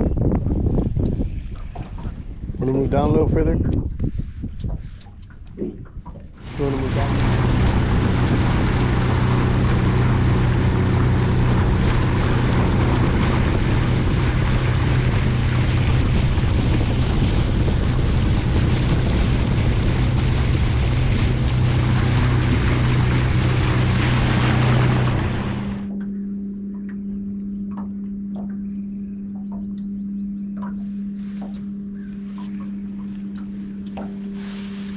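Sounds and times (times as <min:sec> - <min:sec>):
boat motor running: 0:00.0 - 0:34.9
wind: 0:00.0 - 0:34.9
steady hum: 0:04.4 - 0:34.9
water rushing: 0:05.6 - 0:26.0.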